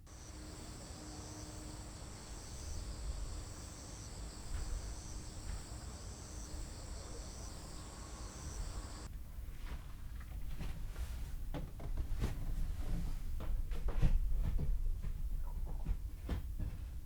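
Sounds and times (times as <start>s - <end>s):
crickets trilling: 0.0s - 9.1s.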